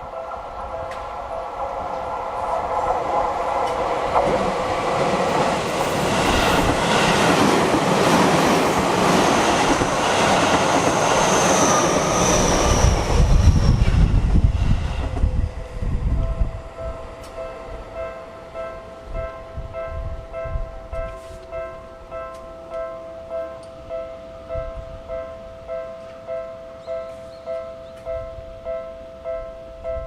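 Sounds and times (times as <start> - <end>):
level crossing warning bell: 0.0 - 13.0, 15.4 - 30.0
high wheel squeal: 10.9 - 14.1.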